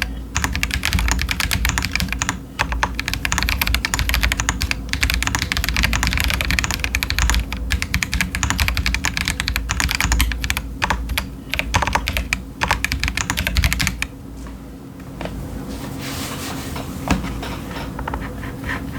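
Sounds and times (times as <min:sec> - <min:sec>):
typing on mechanical keyboard: 0:00.0 - 0:14.1.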